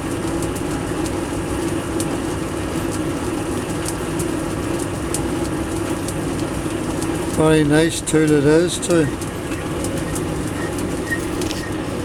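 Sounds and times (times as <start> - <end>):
metal lathe humming: 7.6 - 12.0.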